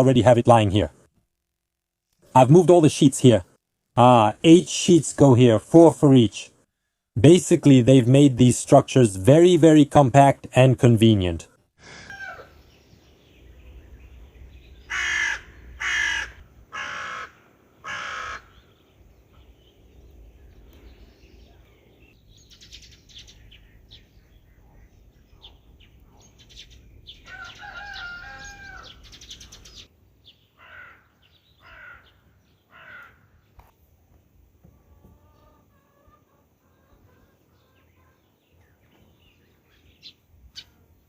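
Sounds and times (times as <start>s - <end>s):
crow cawing: 11.8s - 12.6s, 14.9s - 18.6s, 27.3s - 29.1s, 30.6s - 33.4s
faint bird calls: 11.8s - 33.7s.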